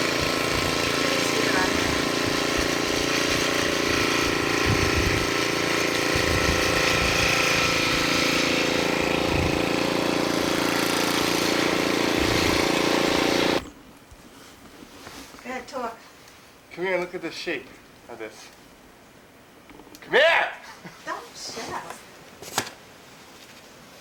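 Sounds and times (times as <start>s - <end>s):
engine running steadily: 0.0s - 13.7s.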